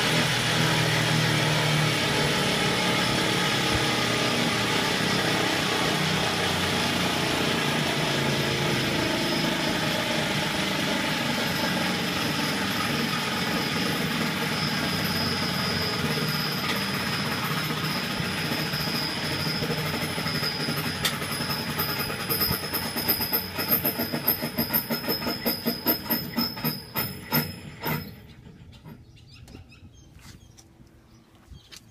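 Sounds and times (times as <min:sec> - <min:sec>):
gas turbine whine and rush: 0:00.0 - 0:19.3
rhythmic scraping pulses: 0:00.0 - 0:29.0.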